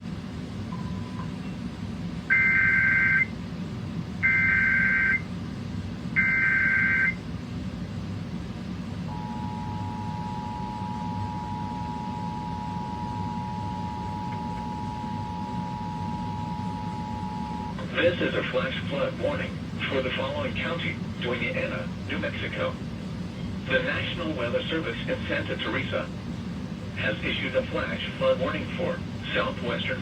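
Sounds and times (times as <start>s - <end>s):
low room hum: 0.0s - 30.0s
two-tone alert signal: 9.1s - 17.7s.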